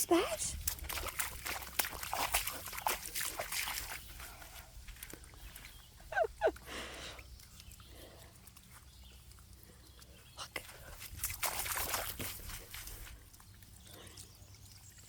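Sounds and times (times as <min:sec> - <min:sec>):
puppies splashing in puddle water: 0:00.0 - 0:15.0.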